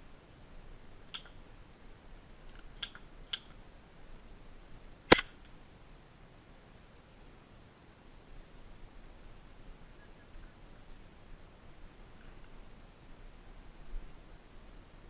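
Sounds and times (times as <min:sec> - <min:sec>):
airsoft gun shots: 0:05.1 - 0:05.4.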